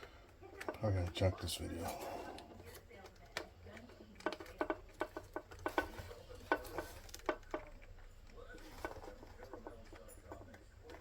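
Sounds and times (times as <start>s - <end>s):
small parts clicking and tapping: 2.6s - 11.0s.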